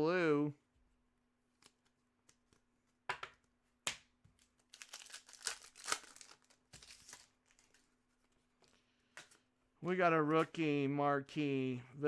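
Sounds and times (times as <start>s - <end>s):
foil wrapper crinkling and tearing: 4.4s - 7.9s.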